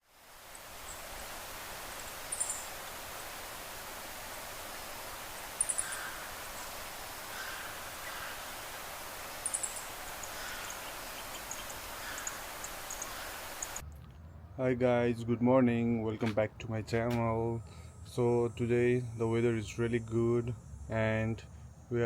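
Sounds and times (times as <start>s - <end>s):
steady outdoor hiss: 0.0s - 22.0s
lower bird calls: 0.6s - 13.8s
high rapid bird chirps: 9.2s - 13.8s.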